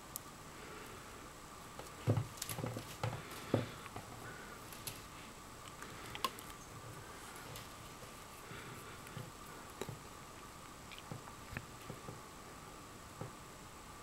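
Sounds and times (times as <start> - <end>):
faint steady hum: 0.0 - 14.0
plastic strings clicking and rustling: 1.8 - 6.6, 7.2 - 8.3.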